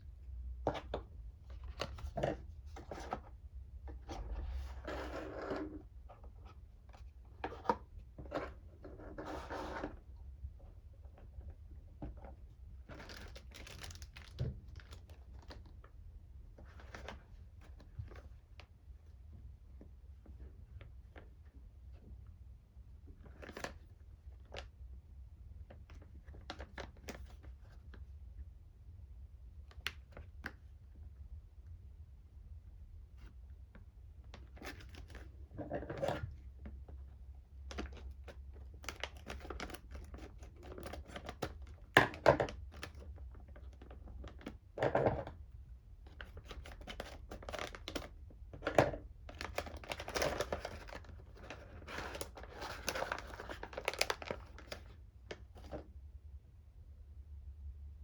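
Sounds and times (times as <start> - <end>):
packaging crinkling and rustling: 12.9 - 15.7, 37.7 - 43.0, 46.1 - 55.8
packaging rustling scrapes: 49.3 - 54.9.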